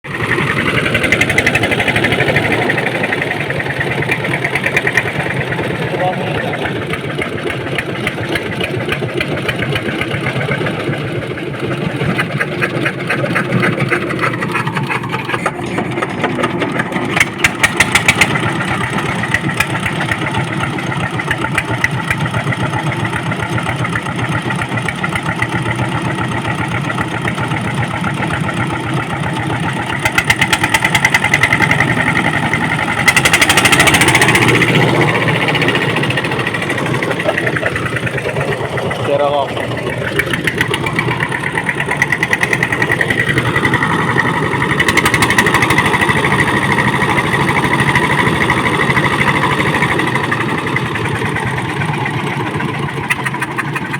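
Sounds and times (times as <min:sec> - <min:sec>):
engine revving: 0:00.0 - 0:08.5, 0:25.9 - 0:53.9.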